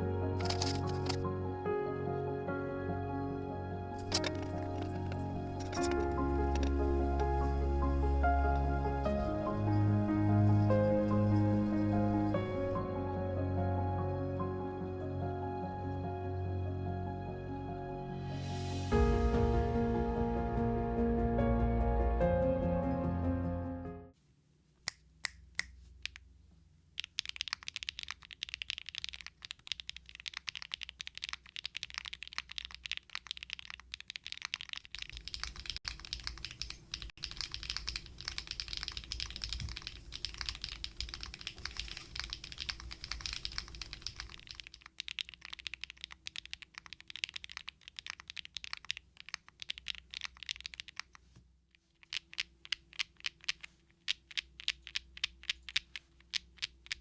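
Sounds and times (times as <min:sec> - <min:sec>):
mechanical keyboard typing: 0:00.4 - 0:01.2, 0:04.0 - 0:12.8, 0:27.0 - 0:51.2, 0:52.0 - 0:57.0.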